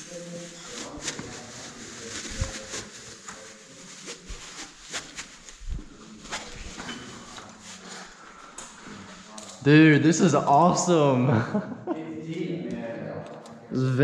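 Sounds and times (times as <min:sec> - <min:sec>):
steady hiss: 0:00.0 - 0:09.4.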